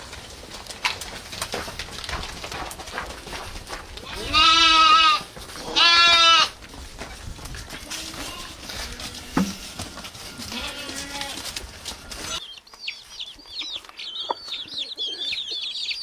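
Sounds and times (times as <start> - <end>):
goat bleating: 4.0 - 6.6, 7.7 - 9.5, 10.4 - 11.6.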